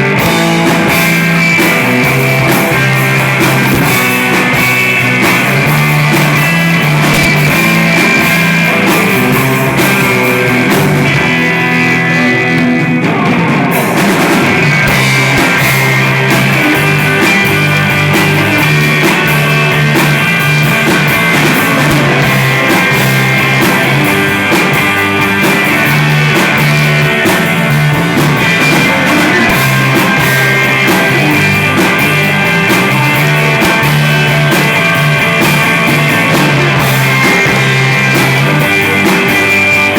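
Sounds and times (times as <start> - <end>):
bass: 0.0 - 39.9
drum kit: 0.0 - 39.9
electric guitar: 0.0 - 39.9.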